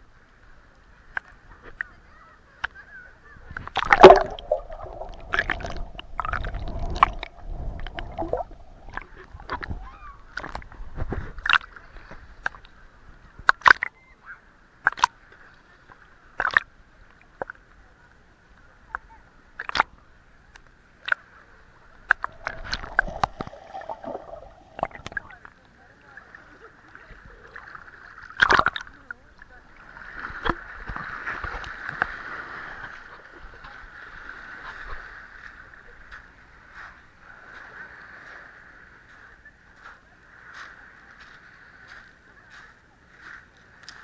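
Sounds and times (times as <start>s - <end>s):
sea water sloshing and splashing: 3.6s - 12.7s, 22.1s - 42.0s.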